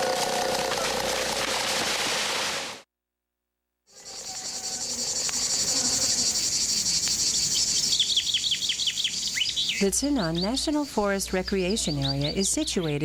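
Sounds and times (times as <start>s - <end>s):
high-pitched insect chorus: 3.9s - 13.0s.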